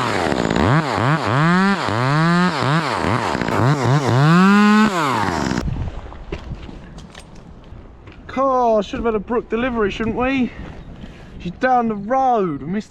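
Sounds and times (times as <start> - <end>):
chainsaw engine revving: 0.0 - 5.6.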